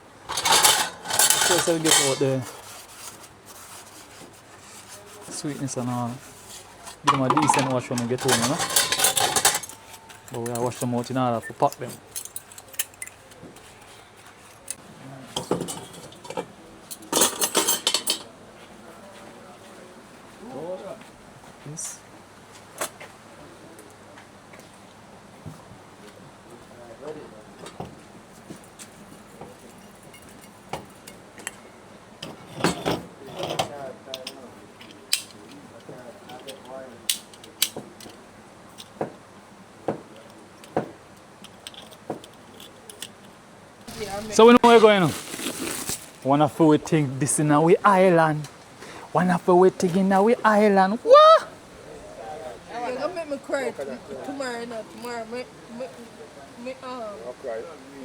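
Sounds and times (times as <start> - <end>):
dishes and cutlery clattering: 0.3 - 2.6, 6.9 - 11.2, 15.4 - 18.3, 32.2 - 34.3.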